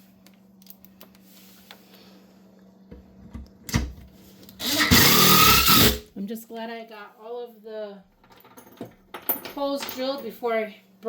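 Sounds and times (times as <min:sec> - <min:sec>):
faint steady hum: 0:00.0 - 0:11.0
screws and drill clicking: 0:04.6 - 0:06.0.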